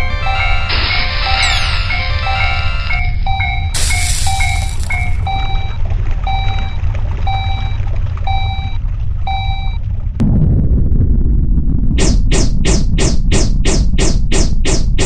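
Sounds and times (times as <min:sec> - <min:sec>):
railroad crossing bell beeping: 0:00.0 - 0:09.8
steady low rumble: 0:00.0 - 0:15.0
burst of hiss: 0:03.8 - 0:05.2.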